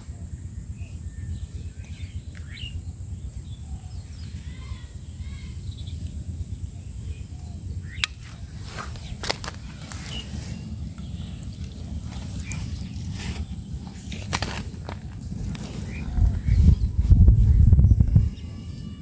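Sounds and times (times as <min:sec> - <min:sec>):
faint chirps: 0:00.0 - 0:14.1
low rumble: 0:00.0 - 0:19.0
sharp clicks and rustles: 0:08.0 - 0:16.6.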